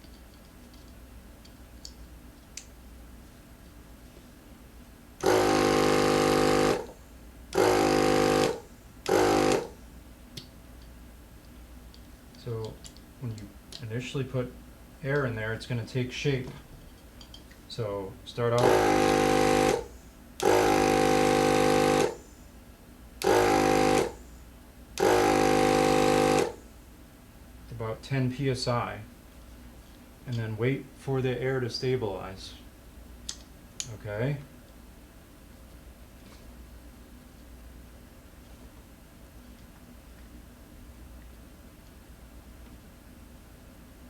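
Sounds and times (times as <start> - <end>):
tire inflator motor buzzing: 5.2 - 9.8, 18.6 - 22.2, 23.2 - 24.3, 25.0 - 26.6.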